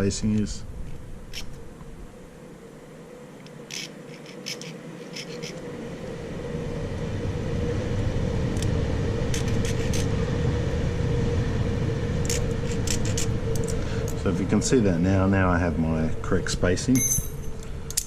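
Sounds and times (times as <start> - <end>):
engine rumbling: 0.0 - 18.0
clicks of keys and file handled: 3.4 - 5.6, 9.4 - 10.1, 12.3 - 14.2.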